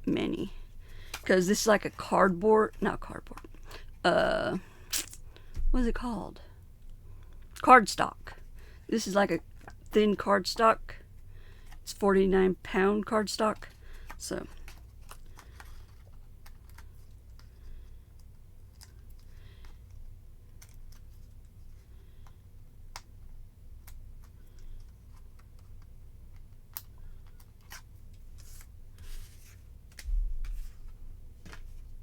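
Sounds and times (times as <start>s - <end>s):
paper rustling and scratching: 13.6s - 21.8s, 23.9s - 32.0s.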